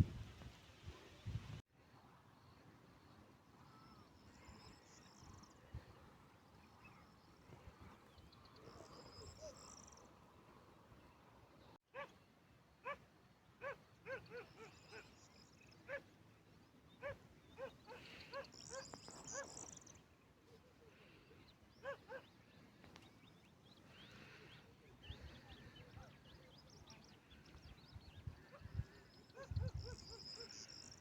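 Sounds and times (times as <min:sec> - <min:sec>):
dog barking: 0:11.9 - 0:12.1, 0:12.8 - 0:13.0, 0:13.6 - 0:15.0, 0:17.0 - 0:19.6, 0:21.8 - 0:22.3, 0:29.4 - 0:30.6
small birds chirping: 0:16.9 - 0:20.1.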